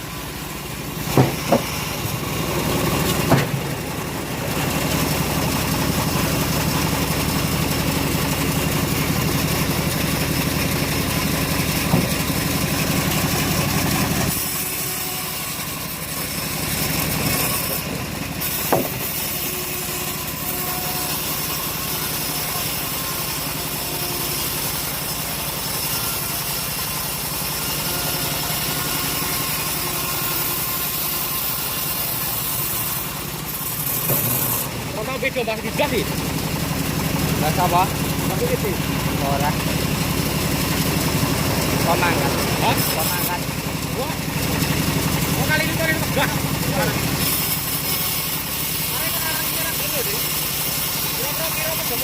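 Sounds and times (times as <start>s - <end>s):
engine running: 0.0s - 52.0s
short sharp knocks: 1.1s - 1.7s.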